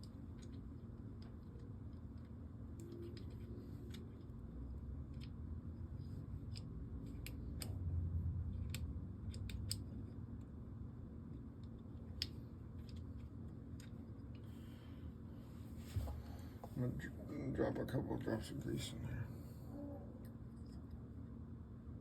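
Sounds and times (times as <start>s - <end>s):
low steady hum: 0.0s - 22.0s
small metal parts clicking: 8.5s - 10.2s.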